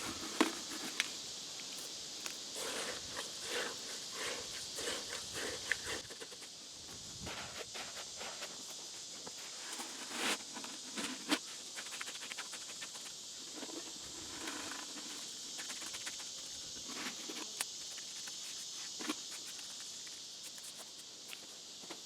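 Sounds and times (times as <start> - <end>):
outdoor background hiss: 0.0 - 22.0.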